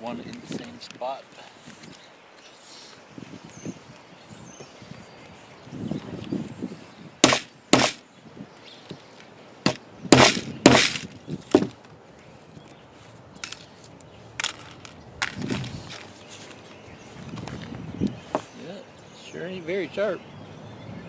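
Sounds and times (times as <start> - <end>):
hammer striking metal cutter: 7.2 - 8.0, 9.7 - 11.1.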